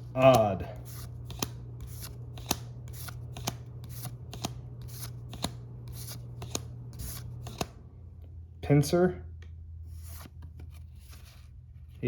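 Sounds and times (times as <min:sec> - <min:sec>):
trading cards swishing and tapping: 0:00.0 - 0:07.8.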